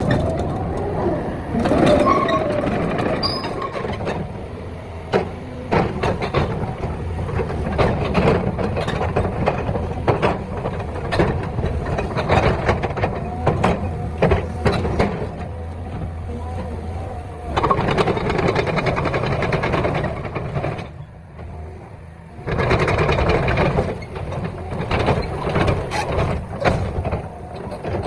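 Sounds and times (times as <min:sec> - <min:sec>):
diesel engine running: 0:00.0 - 0:28.0
brief squeal: 0:01.0 - 0:02.6, 0:03.2 - 0:03.8.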